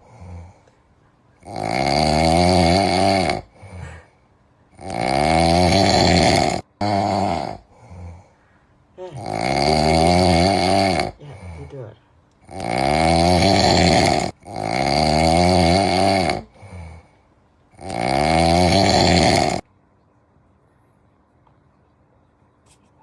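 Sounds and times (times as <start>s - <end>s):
cat snoring: 0.0s - 0.6s, 1.4s - 4.0s, 4.7s - 8.3s, 9.0s - 17.1s, 17.7s - 19.6s.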